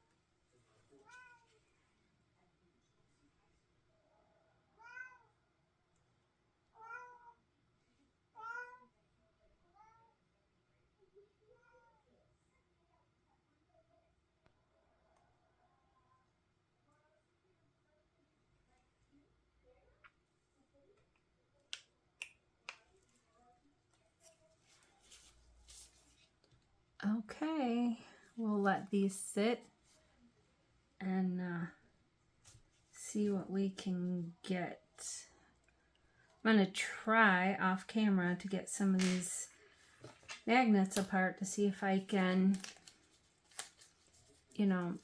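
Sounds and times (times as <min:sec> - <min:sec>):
cat meowing: 0:04.8 - 0:05.3.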